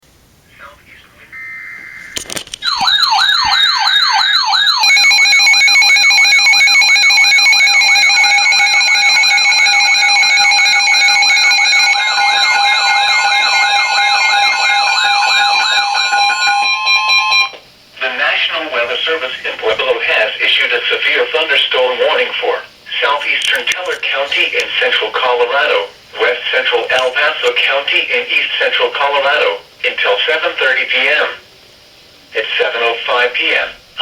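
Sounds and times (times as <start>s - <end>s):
steady alert tones: 1.3s - 17.5s
siren-like alert tone sweeping down: 1.4s - 17.5s.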